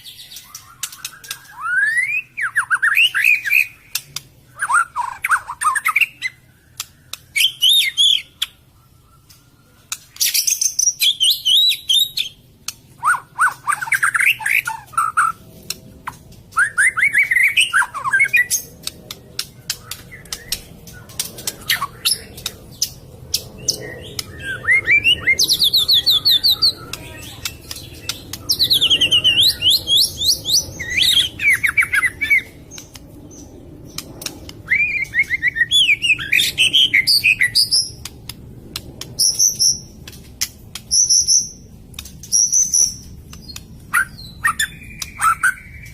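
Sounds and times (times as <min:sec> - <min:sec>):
bird singing whistled phrases: 0:00.0 - 0:04.0, 0:07.3 - 0:09.6, 0:10.2 - 0:12.4, 0:16.5 - 0:18.7, 0:23.8 - 0:32.6, 0:34.6 - 0:38.0, 0:43.9 - 0:45.9
sharp rapid bird clicks: 0:00.2 - 0:01.6, 0:03.3 - 0:04.4, 0:05.7 - 0:07.7, 0:11.9 - 0:45.9.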